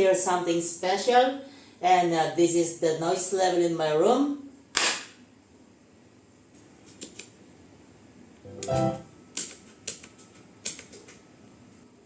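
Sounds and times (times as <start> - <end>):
brief pitched sound: 8.5 - 9.1.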